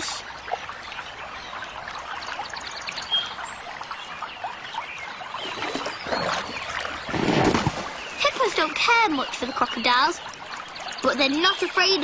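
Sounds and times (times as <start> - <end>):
river water trickling: 0.0 - 12.0.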